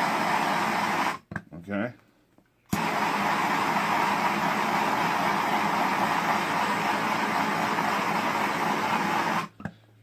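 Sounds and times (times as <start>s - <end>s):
heat gun blowing: 0.0s - 1.2s, 2.7s - 9.5s.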